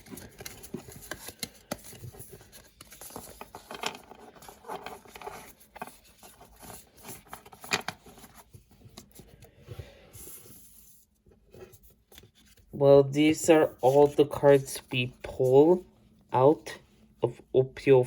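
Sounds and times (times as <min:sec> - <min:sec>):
cards tapping and rustling: 0:00.0 - 0:09.6.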